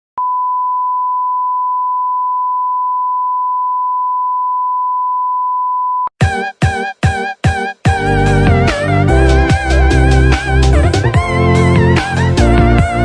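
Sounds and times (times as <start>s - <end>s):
music with plucked notes: 7.9s - 13.0s.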